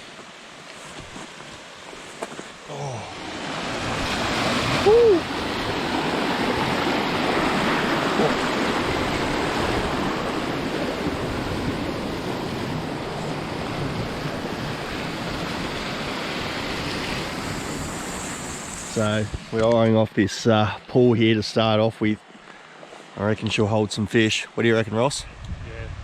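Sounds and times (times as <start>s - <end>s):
river water rushing: 0.0s - 19.6s
person shouting woo: 4.7s - 5.4s.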